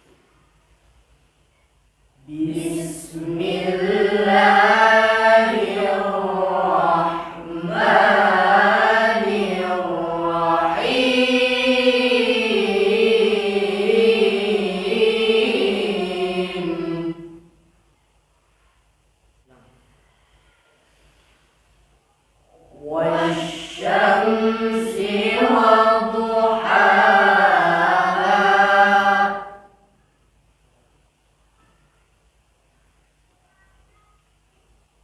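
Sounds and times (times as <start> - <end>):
young person chanting recitation: 2.2 - 17.5, 22.5 - 29.8.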